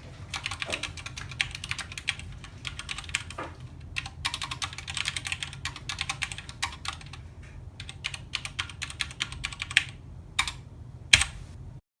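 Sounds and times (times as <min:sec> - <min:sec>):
mechanical keyboard key clacks: 0:07.8 - 0:11.5.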